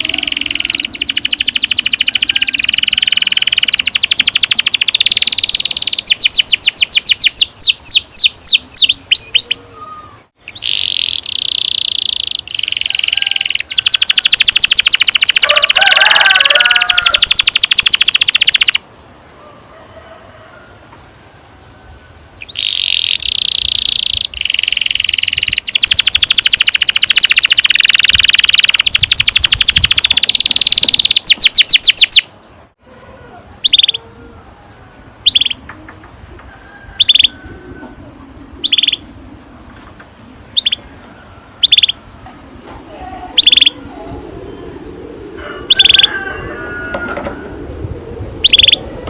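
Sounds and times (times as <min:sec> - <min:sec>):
canary trilling: 0:00.0 - 0:18.8, 0:22.4 - 0:32.4, 0:33.6 - 0:34.1, 0:35.2 - 0:35.6, 0:37.0 - 0:37.9, 0:38.6 - 0:39.1, 0:40.5 - 0:40.9, 0:41.6 - 0:42.0, 0:43.3 - 0:43.9, 0:45.4 - 0:47.0, 0:48.4 - 0:48.8
canary chirps: 0:00.0 - 0:19.6, 0:22.4 - 0:32.6, 0:33.5 - 0:34.3, 0:35.2 - 0:35.6, 0:37.0 - 0:39.1, 0:40.4 - 0:40.9, 0:41.6 - 0:42.1, 0:43.4 - 0:43.8, 0:48.4 - 0:48.8.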